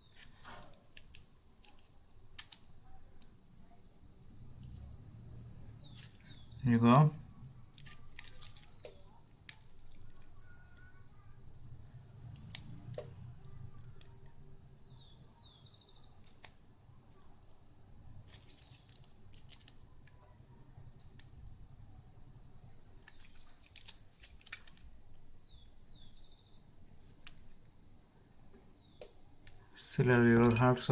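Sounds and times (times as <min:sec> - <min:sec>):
bird chirps: 0:05.4 - 0:09.2, 0:09.9 - 0:11.4, 0:13.1 - 0:16.3, 0:25.1 - 0:26.6.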